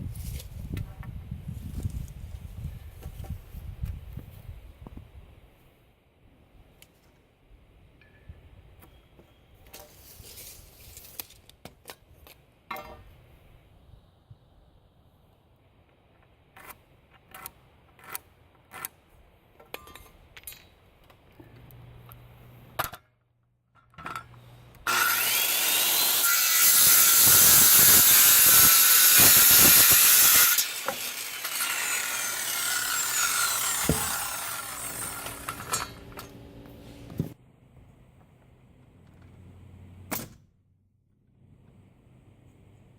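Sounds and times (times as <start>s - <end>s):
power saw cutting lumber: 24.8s - 37.4s.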